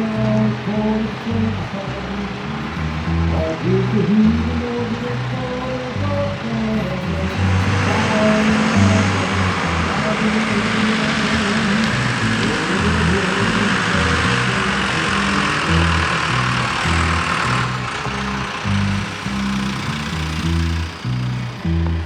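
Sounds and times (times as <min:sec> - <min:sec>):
background music with bass line: 0:00.0 - 0:22.0
engine running: 0:00.0 - 0:22.0.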